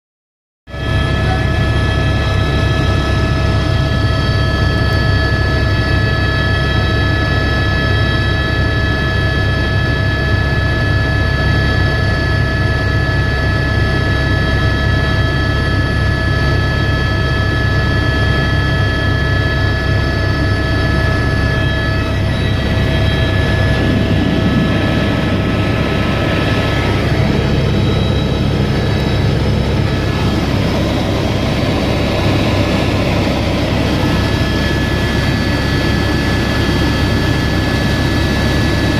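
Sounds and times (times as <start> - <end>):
helicopter turbine whine: 0.7 - 38.9
helicopter rotor thrum: 20.1 - 38.9.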